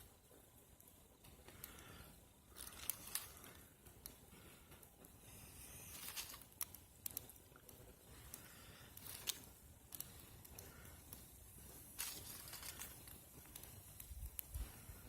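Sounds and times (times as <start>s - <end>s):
twigs crackling and rustling: 1.5s - 4.2s, 5.3s - 15.0s.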